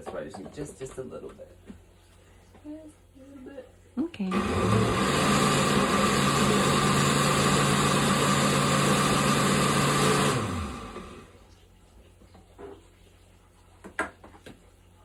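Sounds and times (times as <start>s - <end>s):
blender motor running: 4.3s - 11.4s.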